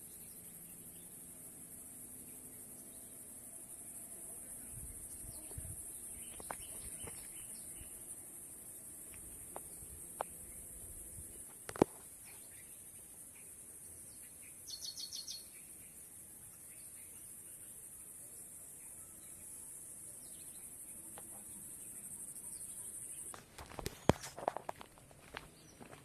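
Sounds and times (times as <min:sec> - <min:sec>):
bird chirps: 0:12.2 - 0:17.8.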